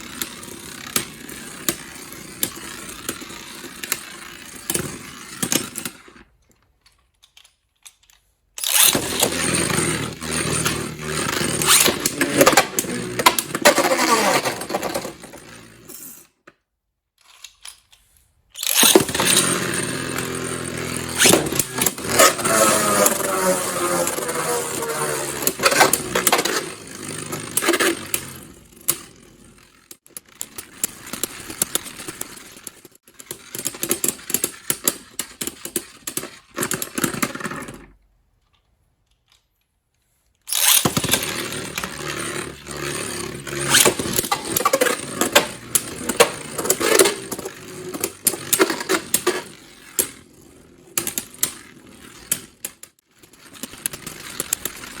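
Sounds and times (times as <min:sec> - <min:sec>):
spinning tops clacking together: 0:08.6 - 0:16.2, 0:18.6 - 0:28.4, 0:40.5 - 0:50.2
spinning tops whirring and scraping: 0:08.6 - 0:16.3, 0:18.5 - 0:37.9, 0:40.5 - 0:55.0.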